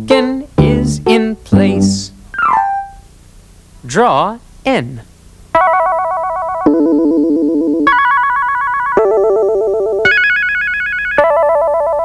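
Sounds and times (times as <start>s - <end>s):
electronic keyboard with vibrato: 0.6s - 3.0s.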